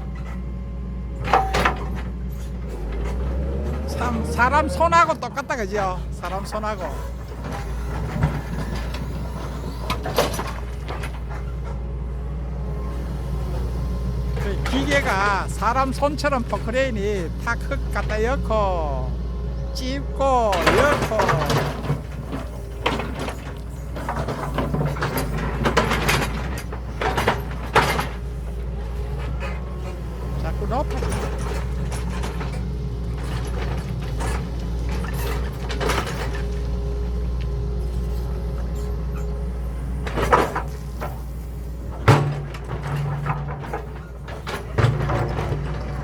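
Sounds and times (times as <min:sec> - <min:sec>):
excavator diesel engine running: 0:00.0 - 0:46.0.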